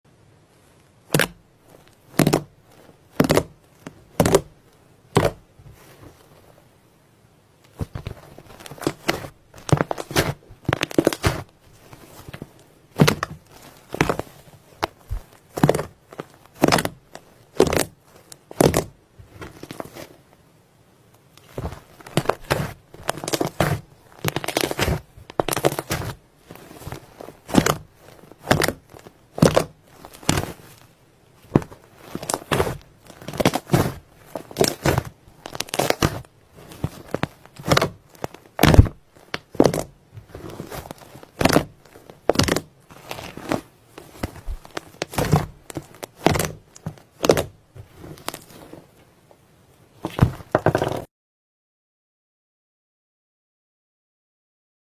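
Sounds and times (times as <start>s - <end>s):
wet slime squeezing by hand: 7.7s - 20.0s, 21.4s - 30.8s, 31.4s - 48.7s.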